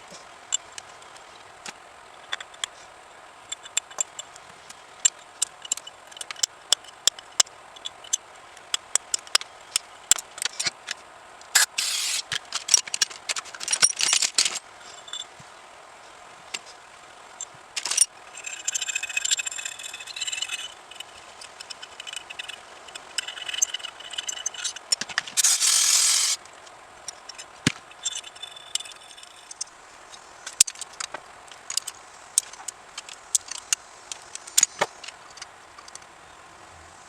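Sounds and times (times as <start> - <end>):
steady hiss: 0.0 - 37.0
small metal parts clinking: 11.6 - 15.3, 17.8 - 26.4, 27.0 - 36.0.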